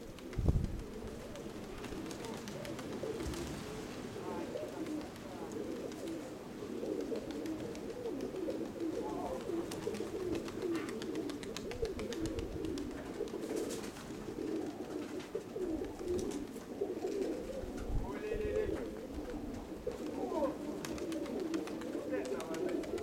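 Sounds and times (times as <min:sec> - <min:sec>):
pigeons cooing: 0:00.0 - 0:23.0.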